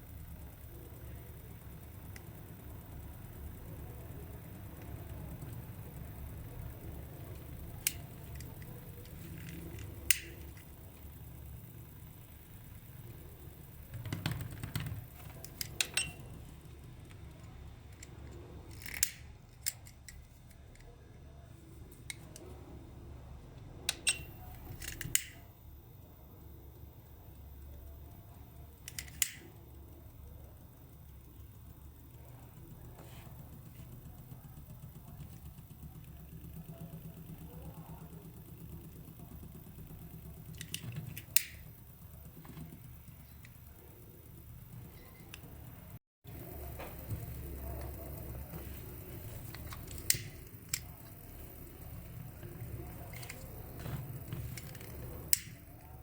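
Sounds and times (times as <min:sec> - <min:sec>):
low steady hum: 0:00.0 - 0:56.0
sharp clicks: 0:07.4 - 0:10.7, 0:28.9 - 0:29.6, 0:49.4 - 0:53.6, 0:54.5 - 0:55.9.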